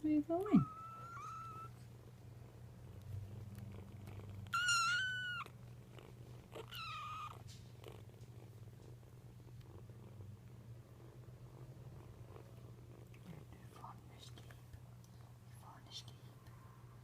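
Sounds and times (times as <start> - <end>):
kittens purring: 0.0 - 17.0
kitten mewing: 0.4 - 1.8, 3.9 - 5.6, 6.5 - 7.4.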